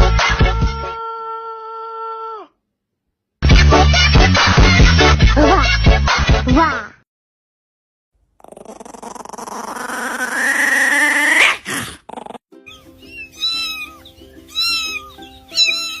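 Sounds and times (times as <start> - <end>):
dog whimpering: 8.4 - 16.0
dog whining: 8.4 - 16.0
background music: 12.6 - 16.0.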